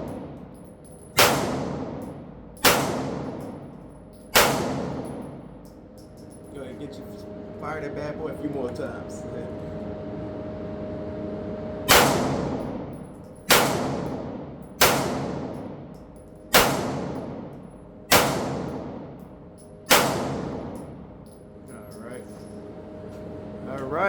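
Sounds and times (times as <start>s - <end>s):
pistol shots echoing: 1.2s - 3.6s, 4.3s - 5.3s, 11.9s - 12.7s, 13.5s - 15.7s, 16.5s - 17.5s, 18.1s - 19.0s, 19.9s - 20.8s.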